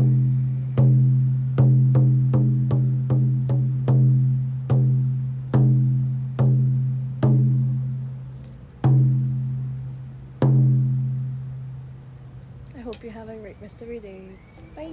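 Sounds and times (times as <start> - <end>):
frame drum booming: 0.0 - 12.0.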